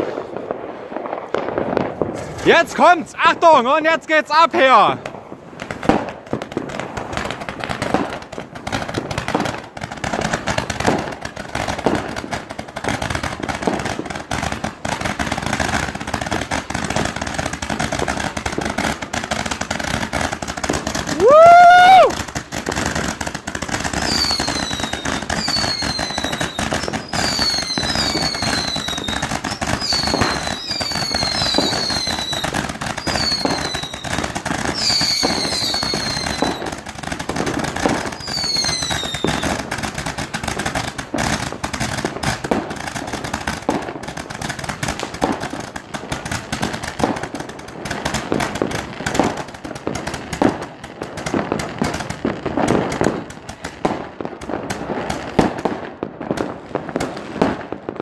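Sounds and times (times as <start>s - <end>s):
fireworks crackling and popping: 0.0s - 58.0s
fireworks cracks and bangs: 0.0s - 58.0s
firework whistles: 21.0s - 22.2s, 24.0s - 36.8s, 37.8s - 39.7s.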